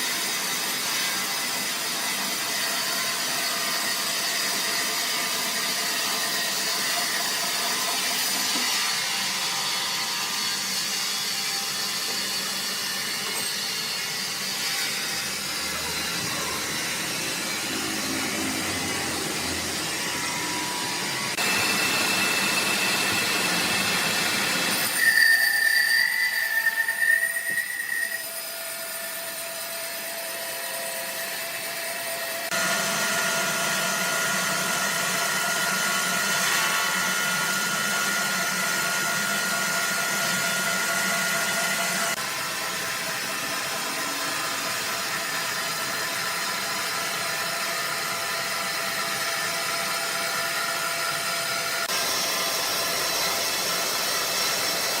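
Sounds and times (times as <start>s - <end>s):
sawmill machinery din: 1.5s - 55.0s
high-pitched metallic squeal: 5.4s - 32.5s.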